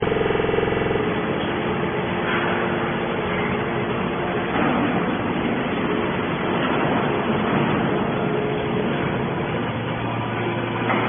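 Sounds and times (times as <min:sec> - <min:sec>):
baler machine running: 0:00.0 - 0:11.0.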